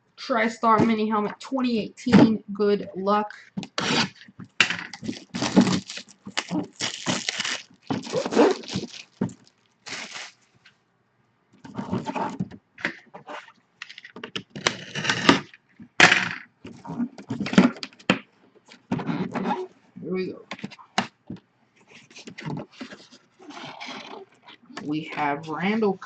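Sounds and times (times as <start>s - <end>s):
cardboard and plastic tearing: 3.6s - 4.2s, 4.8s - 10.4s.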